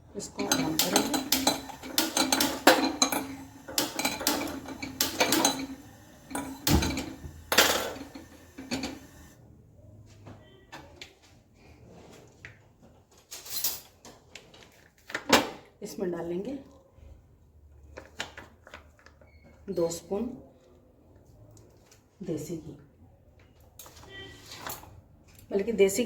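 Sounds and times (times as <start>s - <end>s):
metal utensils clattering: 0.2s - 9.4s.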